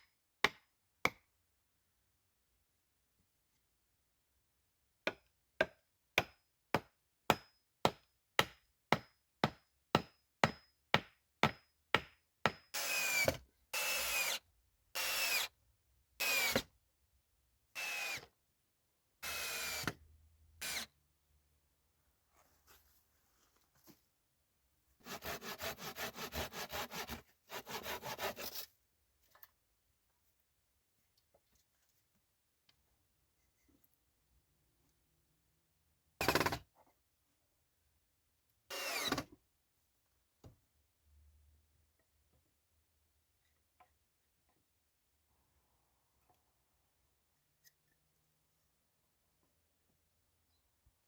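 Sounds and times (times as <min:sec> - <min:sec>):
saw cutting wood: 0:12.8 - 0:14.4, 0:15.0 - 0:15.5, 0:16.2 - 0:16.6, 0:17.8 - 0:18.3, 0:19.2 - 0:20.0, 0:20.6 - 0:20.9, 0:25.0 - 0:28.6, 0:38.7 - 0:39.2.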